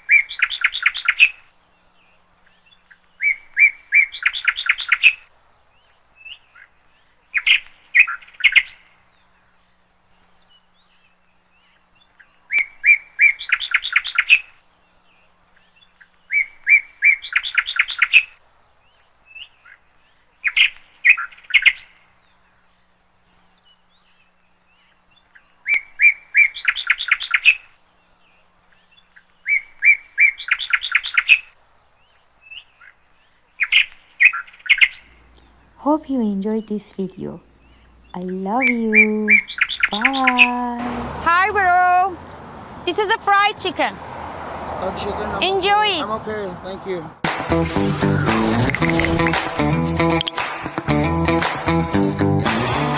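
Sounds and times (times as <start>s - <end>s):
bird chirps: 35.1s - 41.3s
songbird singing: 35.1s - 41.3s.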